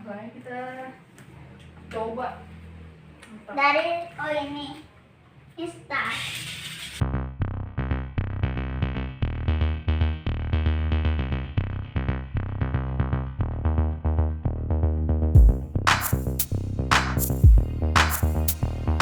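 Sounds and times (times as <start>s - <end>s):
electronic music with quick beat: 15.4s - 19.0s.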